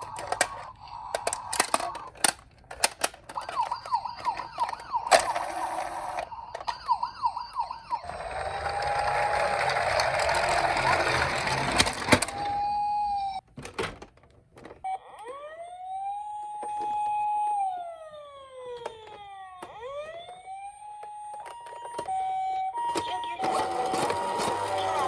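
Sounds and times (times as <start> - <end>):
loud noise with siren tone: 3.3 - 11.0
siren wailing: 3.3 - 11.0, 12.0 - 13.4, 14.8 - 25.0
two-tone hi-lo siren: 3.4 - 9.6, 12.2 - 13.4, 14.9 - 25.0.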